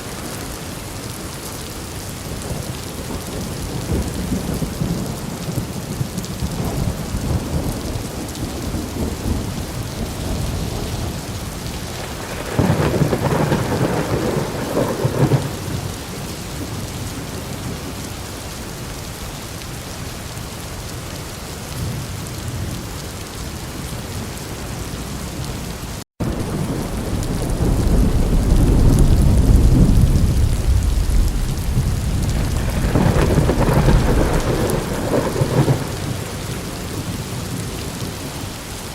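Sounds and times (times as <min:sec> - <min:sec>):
heavy rain: 0:00.0 - 0:38.9
thunder rumbling: 0:02.3 - 0:17.9, 0:26.2 - 0:38.6.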